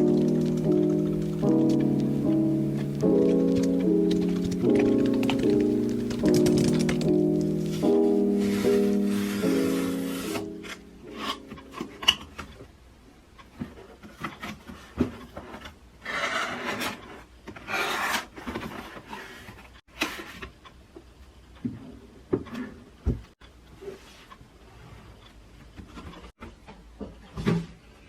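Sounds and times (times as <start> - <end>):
rasping packaging scrapes: 8.3 - 11.5, 16.0 - 19.7.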